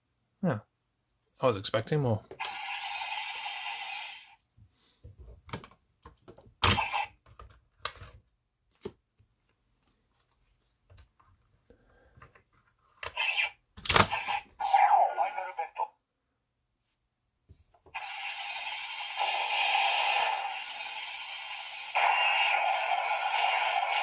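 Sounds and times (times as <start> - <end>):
steady hissing: 18.0 - 24.0.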